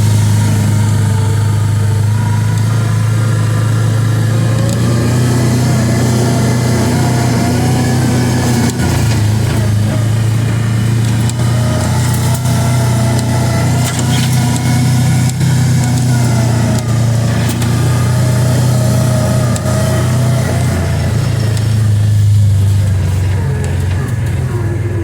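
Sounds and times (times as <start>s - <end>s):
engine running at low speed: 0.0s - 25.0s.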